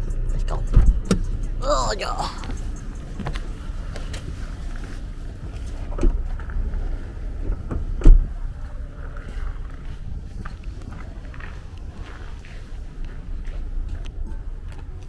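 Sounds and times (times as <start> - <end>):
car road and engine rumble: 0.0 - 15.0.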